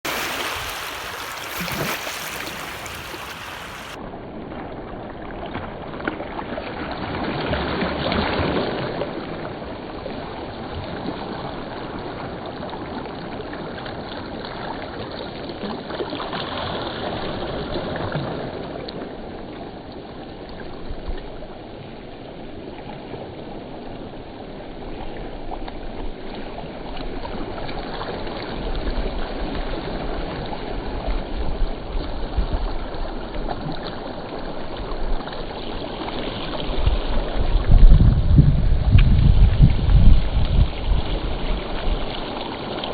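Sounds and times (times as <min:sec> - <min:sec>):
wind gusting: 0:00.0 - 0:04.0
wind buffeting microphone: 0:36.6 - 0:42.4.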